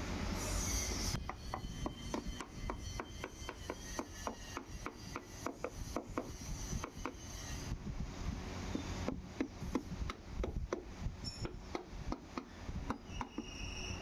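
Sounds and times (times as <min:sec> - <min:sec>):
hand scraping or filing strokes: 0:00.4 - 0:07.8.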